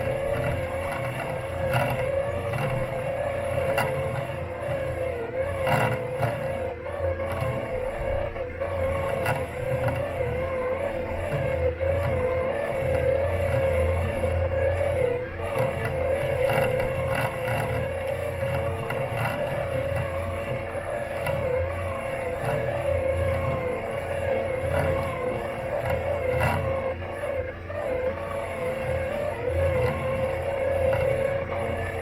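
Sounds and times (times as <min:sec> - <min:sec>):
faint clicks and knocks: 0:00.0 - 0:32.0
robot lawn mower motor whine: 0:00.0 - 0:32.0.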